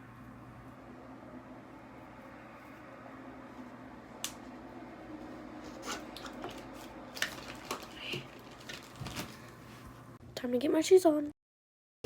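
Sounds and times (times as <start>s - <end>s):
steady low hum: 0.0s - 7.2s.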